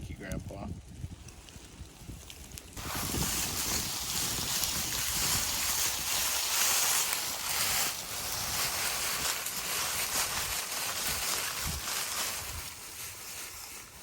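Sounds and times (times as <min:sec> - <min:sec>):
wind buffeting microphone: 0:00.0 - 0:13.5.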